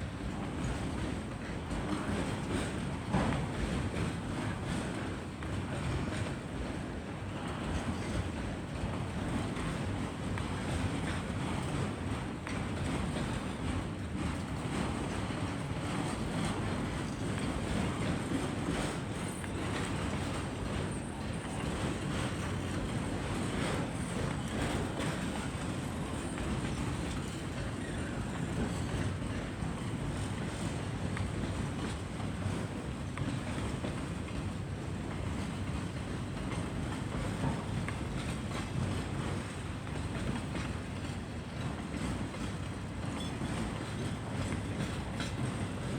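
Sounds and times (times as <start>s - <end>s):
train cars rumbling on rails: 0.0s - 45.9s.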